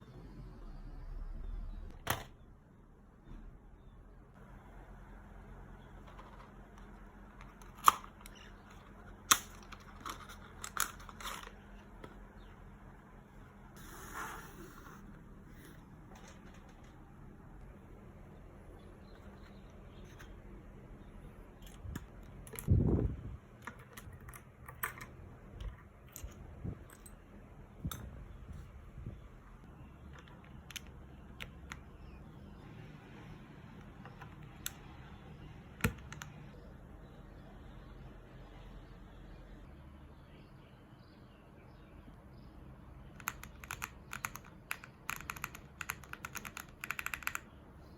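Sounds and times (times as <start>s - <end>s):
mechanical keyboard keys clicking: 43.1s - 47.6s.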